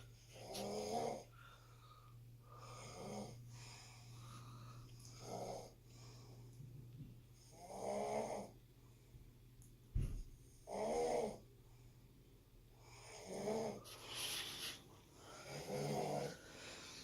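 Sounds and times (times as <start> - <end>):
rasping snoring: 0.3 - 1.3, 2.6 - 3.4, 5.1 - 5.8, 7.5 - 8.6, 10.7 - 11.4, 12.8 - 13.8, 15.3 - 16.4.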